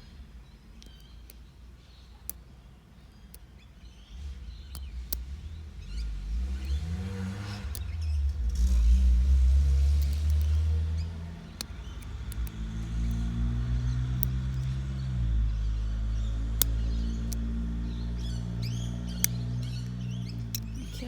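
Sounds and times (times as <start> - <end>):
vehicle engine rumble: 0.0 - 21.0
lock picks clicking in padlock: 9.9 - 15.1, 16.2 - 20.8.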